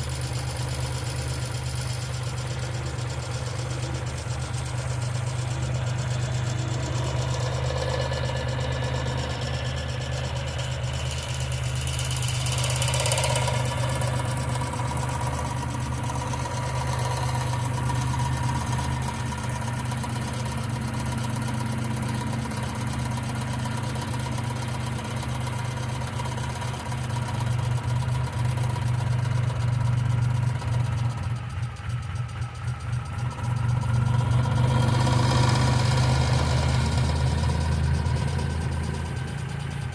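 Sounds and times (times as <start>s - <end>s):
car engine idling: 0.0s - 39.9s
lifters ticking: 0.0s - 39.9s.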